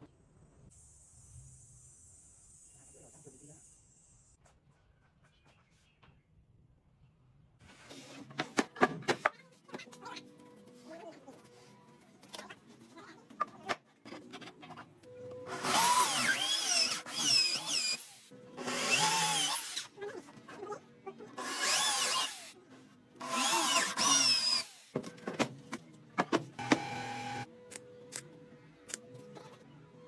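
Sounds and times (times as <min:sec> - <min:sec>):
power drill whining into wood: 0:15.5 - 0:19.9, 0:21.4 - 0:22.5, 0:23.2 - 0:25.0, 0:26.6 - 0:27.5.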